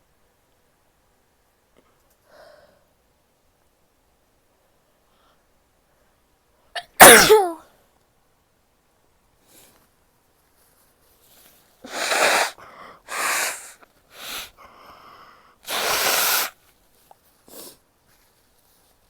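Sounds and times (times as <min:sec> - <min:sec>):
woman sneezing: 0:06.8 - 0:07.6, 0:11.9 - 0:13.7, 0:15.7 - 0:16.5
sniff: 0:11.3 - 0:16.7, 0:17.4 - 0:17.9
voiced in-breath: 0:11.9 - 0:16.5.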